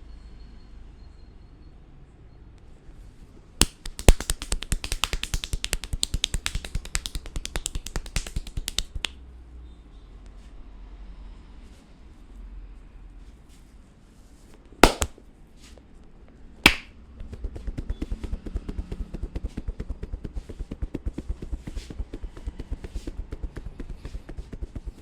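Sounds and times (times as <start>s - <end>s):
fast light taps: 3.6s - 9.1s, 14.8s - 15.1s, 16.7s - 16.9s
sharp snaps: 3.6s - 9.2s, 14.8s - 15.1s, 16.7s - 16.9s.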